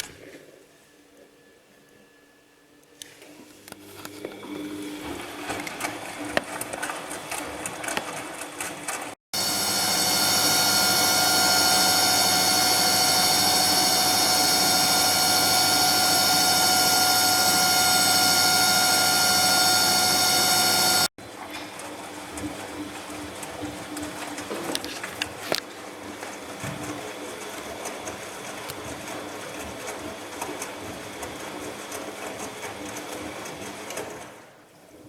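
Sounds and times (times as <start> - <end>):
washing machine spinning: 3.8 - 34.5.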